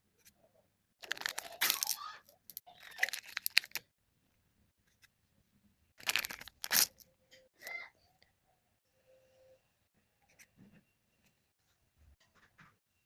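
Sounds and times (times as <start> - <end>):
packaging crinkling and tearing: 1.0 - 3.8, 6.0 - 7.0.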